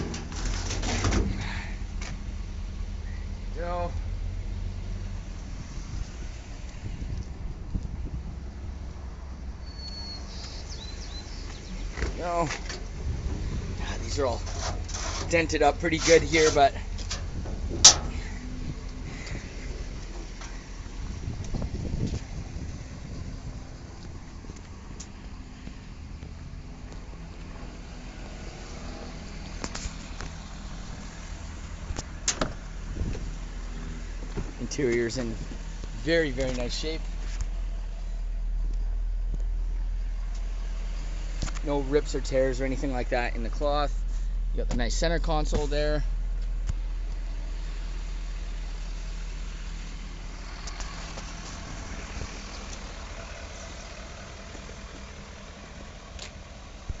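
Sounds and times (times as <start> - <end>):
low engine hum: 0.0 - 57.0
truck door clicks and knocks: 32.2 - 33.2.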